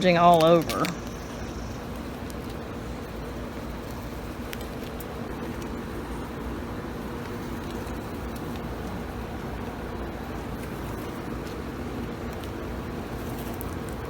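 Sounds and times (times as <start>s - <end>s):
honeybees buzzing: 0.0s - 4.4s.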